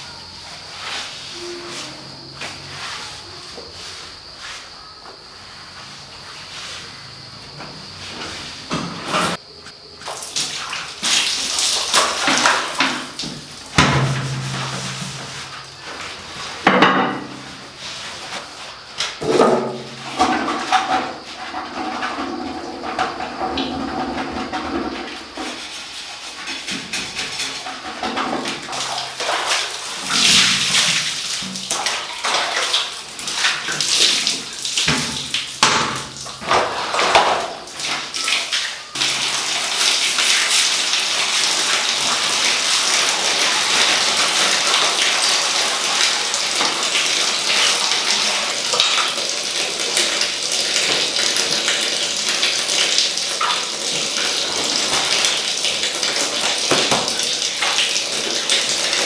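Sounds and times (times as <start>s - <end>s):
tap running into basin: 10.0s - 25.6s, 26.5s - 59.0s
water splashing: 28.6s - 59.0s.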